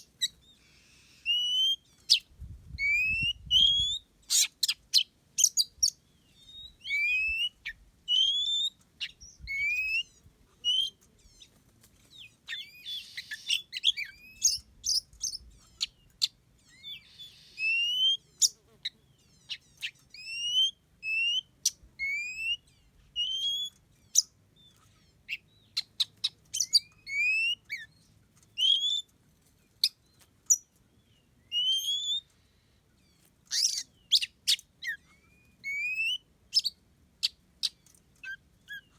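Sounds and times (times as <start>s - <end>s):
birds singing whistled notes: 0.0s - 29.1s, 29.7s - 38.9s
harsh bird chatter: 9.0s - 20.0s
sharp high bird chips: 12.5s - 14.6s.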